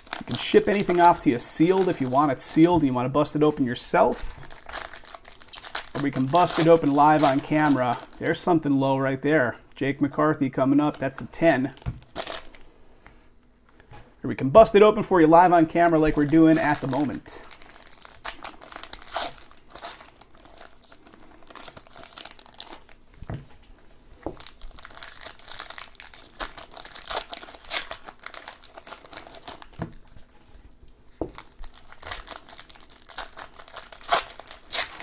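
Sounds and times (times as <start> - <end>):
wrappers torn and crinkled: 0.0 - 2.6, 4.4 - 8.4, 11.6 - 12.6, 16.2 - 23.0, 24.2 - 30.2, 31.4 - 35.0.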